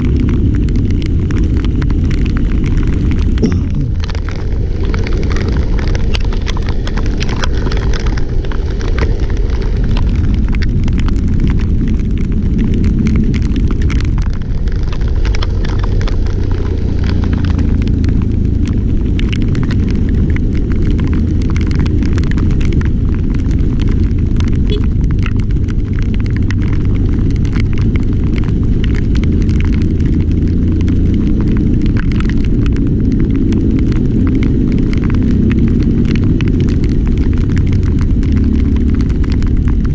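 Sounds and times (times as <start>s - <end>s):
rain crackling: 0.0s - 39.9s
strong wind buffeting microphone: 0.0s - 39.9s.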